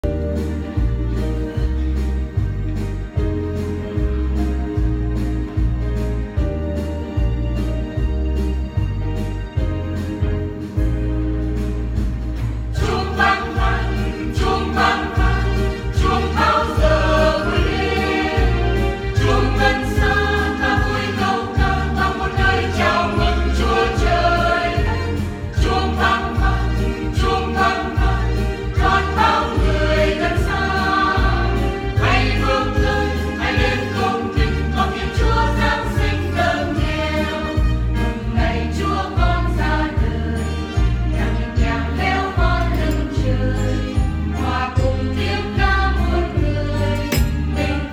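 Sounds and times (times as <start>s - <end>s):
church choir singing a hymn: 12.7s - 47.9s.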